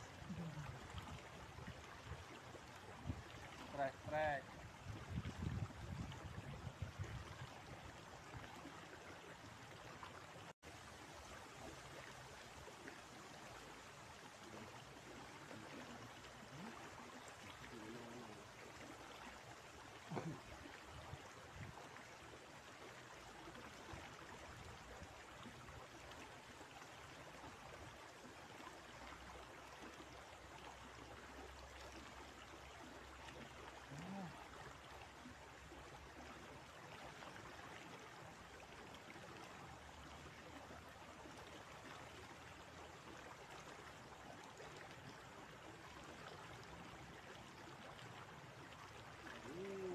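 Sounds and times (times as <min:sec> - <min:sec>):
river water rushing: 0:00.0 - 0:04.7.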